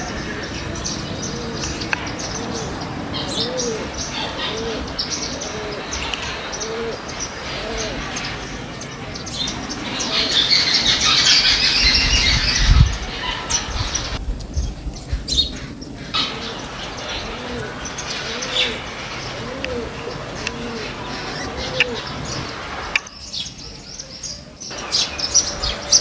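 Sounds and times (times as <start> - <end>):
birds chirping and twittering: 0.0 - 26.0
low bird calls: 0.0 - 26.0.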